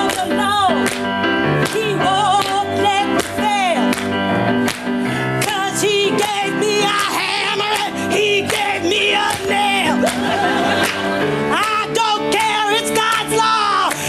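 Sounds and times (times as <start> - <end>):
piano accompaniment: 0.0 - 14.0
gospel singing: 5.3 - 14.0.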